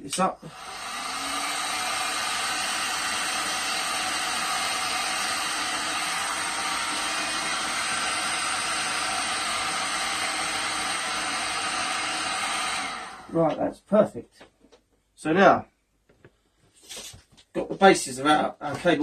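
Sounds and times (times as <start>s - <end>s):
heat gun blowing hot air: 0.4s - 13.4s.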